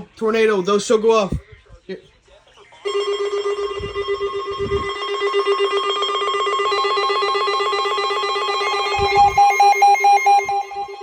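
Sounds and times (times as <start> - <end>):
fast-pulsing buzzy alert beep: 2.9 - 11.0
higher pulsing alert tone: 2.9 - 11.0.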